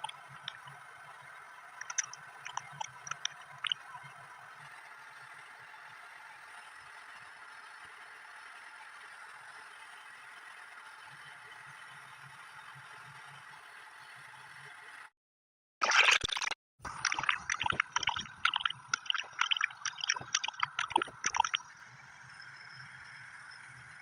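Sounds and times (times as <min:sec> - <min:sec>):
wet popping and gurgling: 0:00.0 - 0:00.6, 0:01.8 - 0:03.8, 0:15.8 - 0:21.6.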